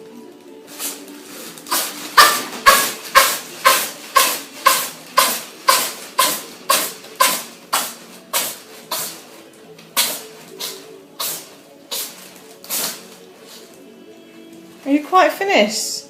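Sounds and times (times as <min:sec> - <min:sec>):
pet sneezing: 0:00.7 - 0:09.4, 0:10.0 - 0:13.7.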